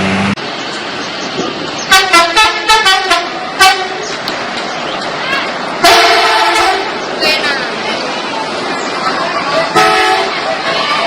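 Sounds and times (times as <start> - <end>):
bus musical horn tune: 1.9 - 4.0, 5.8 - 6.9, 9.7 - 10.4.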